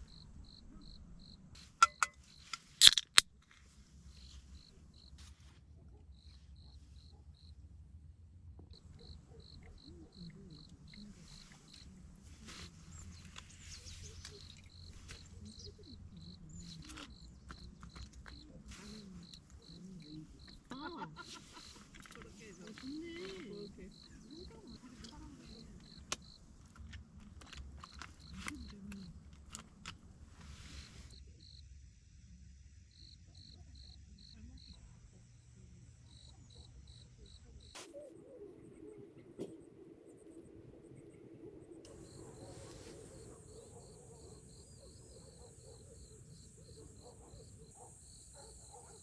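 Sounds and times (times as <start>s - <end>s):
insect chirping: 0.0s - 5.2s, 6.1s - 7.6s, 8.7s - 49.0s
sharp clicks: 1.8s - 3.3s
faint distant voices: 3.6s - 49.0s.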